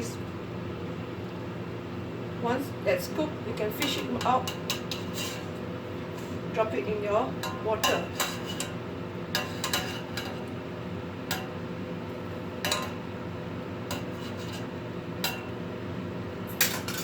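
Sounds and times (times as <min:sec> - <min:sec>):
steady low hum: 0:00.0 - 0:17.0
utensils clinking against pots: 0:03.7 - 0:05.6, 0:06.2 - 0:10.5, 0:12.6 - 0:13.1, 0:13.9 - 0:15.5, 0:16.5 - 0:17.0.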